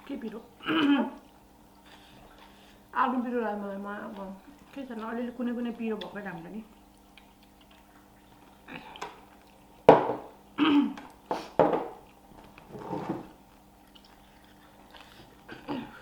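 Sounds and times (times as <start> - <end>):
eating mouth noises: 5.9 - 9.8.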